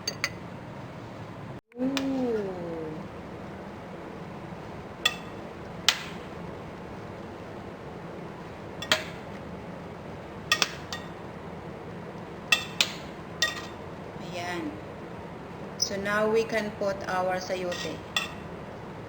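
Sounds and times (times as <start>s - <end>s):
metallic clinks on a pot: 0.0s - 0.4s.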